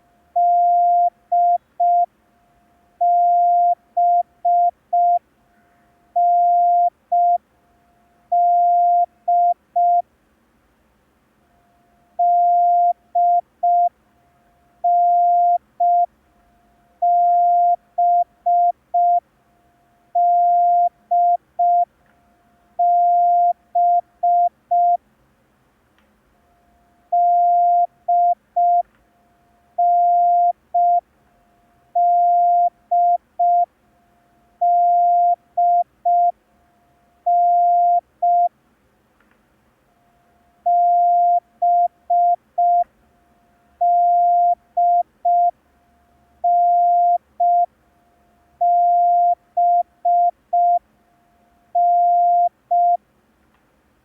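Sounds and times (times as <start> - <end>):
morse code beeps: 0.4 - 2.1, 3.0 - 5.2, 6.2 - 7.4, 8.3 - 10.0, 12.2 - 13.9, 14.9 - 16.1, 17.0 - 19.2, 20.2 - 21.9, 22.8 - 25.0, 27.2 - 28.8, 29.8 - 31.0, 32.0 - 33.7, 34.6 - 36.3, 37.3 - 38.5, 40.7 - 42.8, 43.8 - 45.5, 46.5 - 47.7, 48.6 - 50.8, 51.8 - 53.0.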